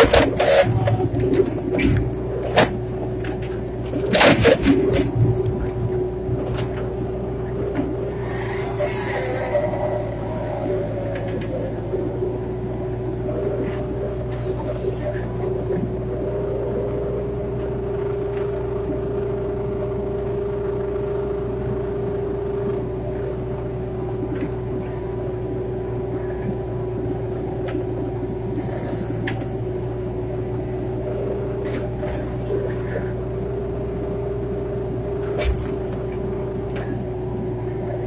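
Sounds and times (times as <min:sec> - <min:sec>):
excavator diesel engine rumbling: 0:00.0 - 0:38.0.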